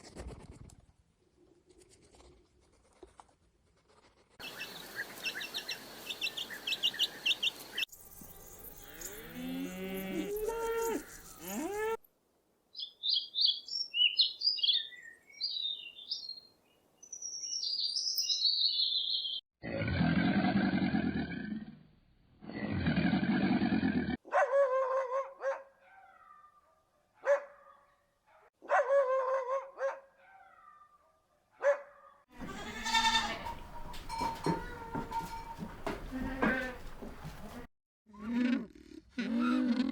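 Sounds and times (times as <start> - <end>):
high bird chirps: 4.4 - 9.3, 12.8 - 16.4, 17.0 - 19.4.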